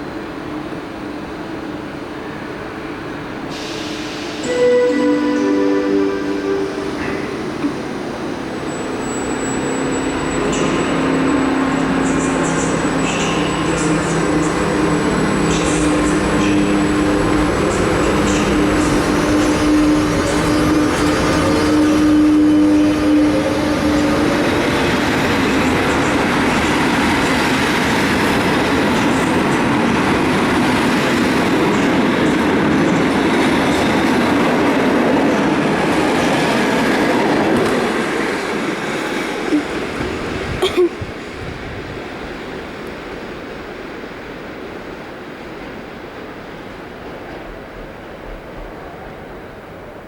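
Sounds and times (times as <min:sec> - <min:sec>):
train carriages rumbling: 0:03.0 - 0:50.0
steady tone: 0:04.4 - 0:08.2.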